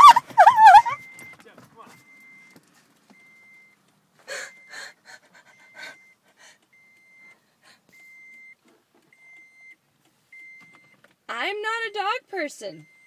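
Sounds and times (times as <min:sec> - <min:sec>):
car warning chime beeping: 0:00.0 - 0:13.0
loud panting breaths: 0:04.2 - 0:06.8, 0:07.4 - 0:08.0.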